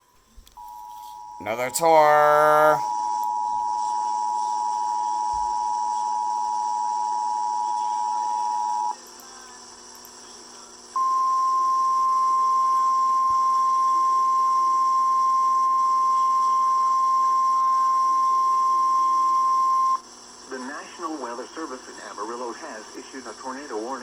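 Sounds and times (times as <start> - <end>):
steady warning alarm tone: 0.6 - 9.0, 11.0 - 20.0
two-tone attention signal: 0.6 - 9.0, 11.0 - 20.0.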